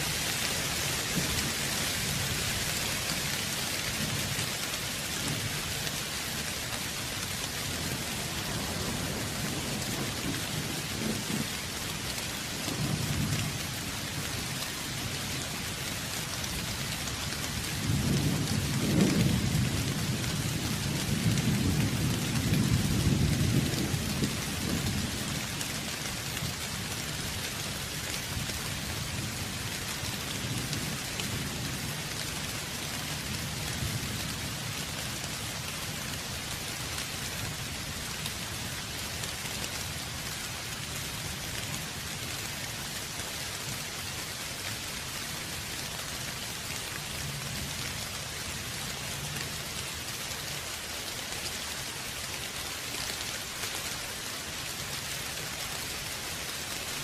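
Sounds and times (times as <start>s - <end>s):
steady rain falling: 0.0s - 57.0s
thunder rumbling: 7.7s - 12.0s.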